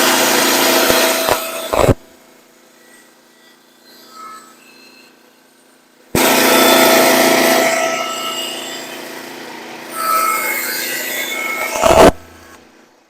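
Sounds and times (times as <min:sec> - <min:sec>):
band saw blade cutting wood: 0:00.0 - 0:02.1, 0:06.1 - 0:12.6.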